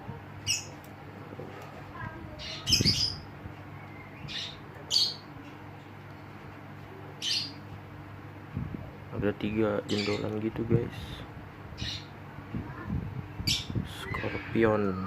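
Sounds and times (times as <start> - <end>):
low background hum: 0.0 - 15.0
bird chirping and squawking: 0.4 - 0.8, 2.4 - 5.3, 7.2 - 7.6, 9.8 - 10.4, 11.7 - 12.2, 13.4 - 15.0.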